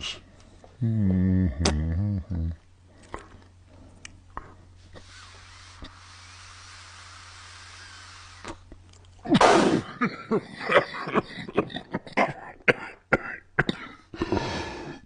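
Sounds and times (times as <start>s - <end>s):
man coughing: 9.3s - 14.5s.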